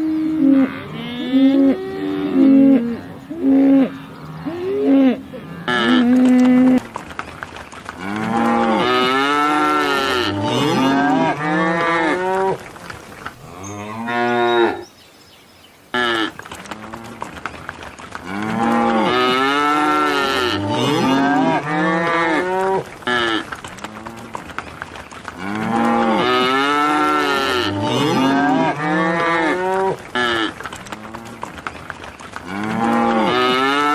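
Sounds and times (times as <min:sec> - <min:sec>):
cattle mooing: 0:00.0 - 0:06.8, 0:08.0 - 0:12.6, 0:18.3 - 0:23.4, 0:25.4 - 0:30.5, 0:32.4 - 0:33.9.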